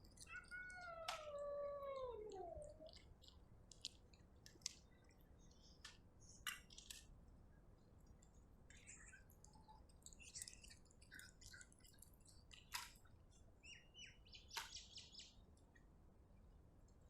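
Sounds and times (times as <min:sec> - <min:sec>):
cat chewing food: 0:00.0 - 0:07.1, 0:08.0 - 0:13.3.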